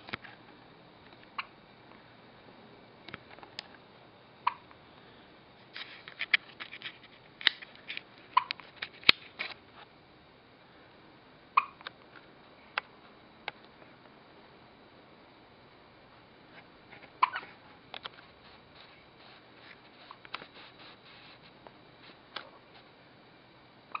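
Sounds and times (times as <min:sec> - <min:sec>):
small clicks and rustles: 0:05.6 - 0:09.9.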